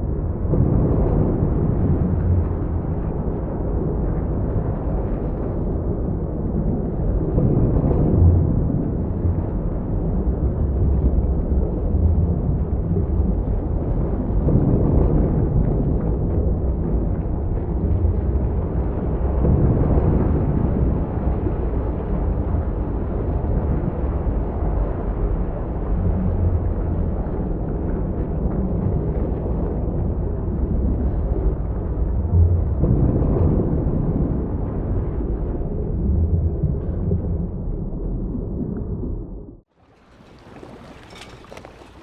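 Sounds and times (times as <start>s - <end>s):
ocean surf washing on beach: 39.8s - 42.0s.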